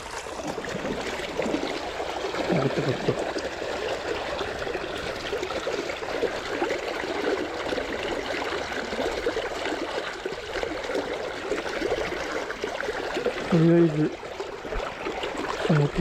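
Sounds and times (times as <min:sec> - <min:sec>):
river water running over stones: 0:00.0 - 0:16.0.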